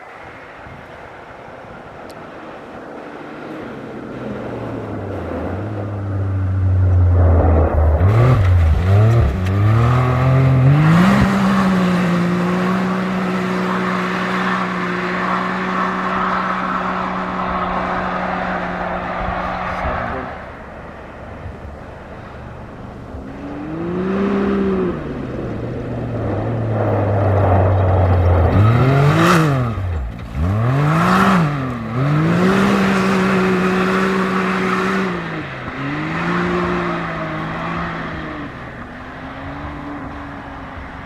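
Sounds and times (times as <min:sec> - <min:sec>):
car engine revving hard: 0:07.3 - 0:20.3, 0:23.3 - 0:25.5, 0:28.4 - 0:38.6.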